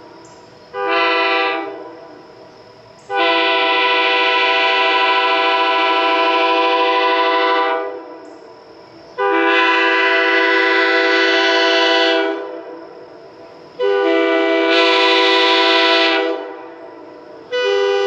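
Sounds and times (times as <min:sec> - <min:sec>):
train horn chord blasts: 0:00.7 - 0:02.1, 0:03.1 - 0:08.2, 0:09.2 - 0:12.8, 0:13.8 - 0:18.0.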